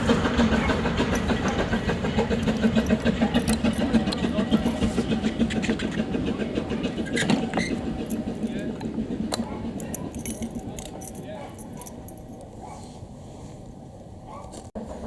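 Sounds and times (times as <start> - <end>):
steam locomotive exhaust beating: 0.0 - 12.4.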